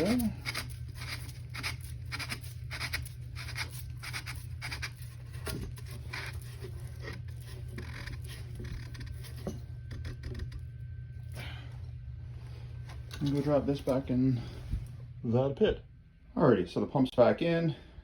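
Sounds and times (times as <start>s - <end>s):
pipe scratching as it screws in: 0.0s - 10.7s
steady low hum: 0.0s - 18.0s.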